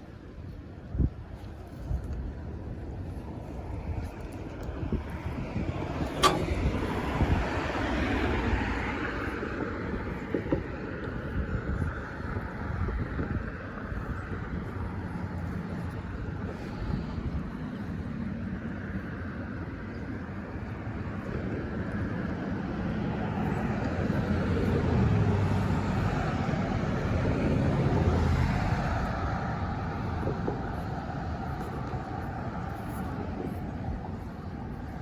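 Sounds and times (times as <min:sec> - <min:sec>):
traffic hum: 0:00.0 - 0:35.0
vehicle passing: 0:21.1 - 0:35.0.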